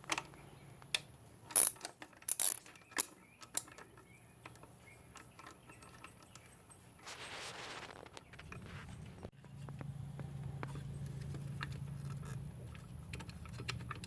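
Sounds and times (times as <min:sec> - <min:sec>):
ratchet wrench clicking: 0:01.5 - 0:03.7.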